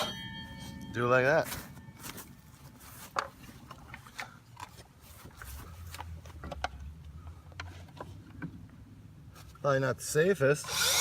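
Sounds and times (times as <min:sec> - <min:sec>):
wood and tools clicking and knocking: 0:03.0 - 0:08.7.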